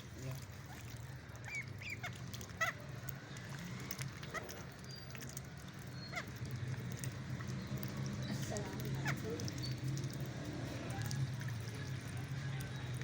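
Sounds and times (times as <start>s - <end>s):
ducklings peeping: 0.7s - 2.8s.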